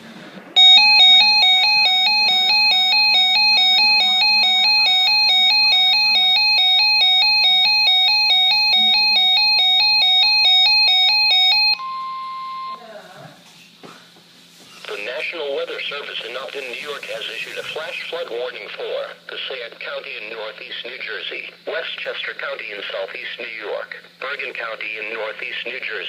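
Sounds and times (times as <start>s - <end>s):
two-pitch electronic alert beeping: 0.6s - 12.8s.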